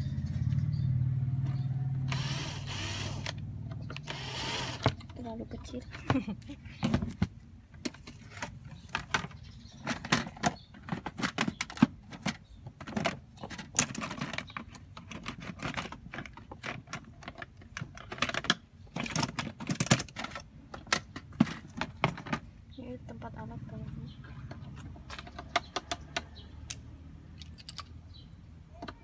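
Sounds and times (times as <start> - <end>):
metal tools clinking and rattling: 7.8 - 22.5.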